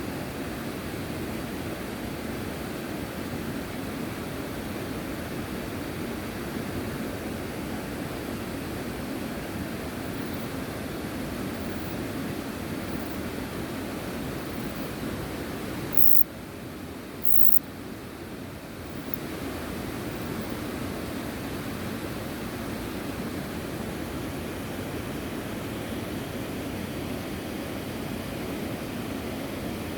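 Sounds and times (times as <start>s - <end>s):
background hiss: 9.9s - 10.6s, 11.2s - 13.3s, 13.9s - 15.0s, 15.8s - 16.2s, 17.2s - 17.6s, 18.7s - 20.7s
faint clicks: 16.0s - 16.2s, 17.2s - 17.6s.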